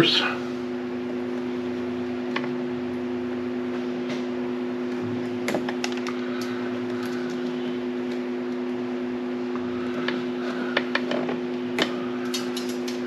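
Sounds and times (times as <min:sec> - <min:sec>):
hand tools and wires clicking: 0:10.8 - 0:13.0.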